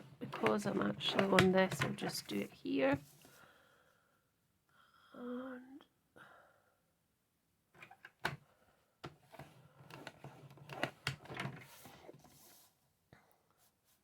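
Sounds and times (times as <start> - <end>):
crafting tools clicking and scraping: 0.0 - 2.5, 9.3 - 11.7.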